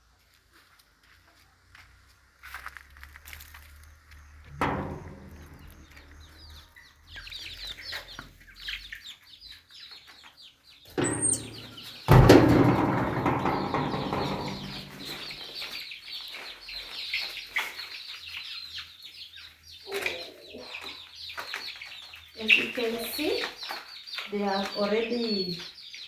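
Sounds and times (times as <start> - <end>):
chicks cheeping: 4.1 - 26.0
knock: 4.5 - 5.9, 11.0 - 15.3
loud thump: 4.5 - 6.0, 10.9 - 15.3.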